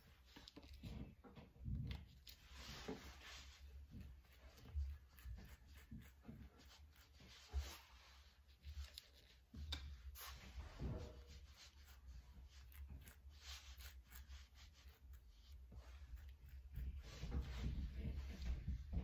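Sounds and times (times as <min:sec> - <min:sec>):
knife scraping spread on bread: 0:11.2 - 0:17.6.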